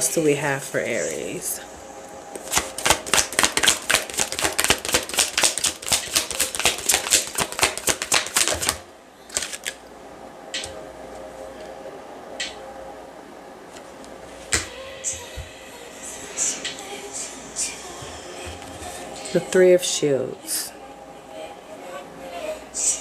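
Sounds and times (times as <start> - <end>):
cards being shuffled: 2.4 - 9.8.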